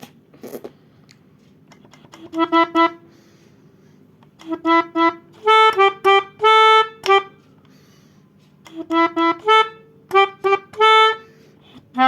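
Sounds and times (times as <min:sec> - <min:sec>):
melodica playing short notes: 0:02.0 - 0:03.1, 0:04.4 - 0:07.6, 0:08.6 - 0:11.3.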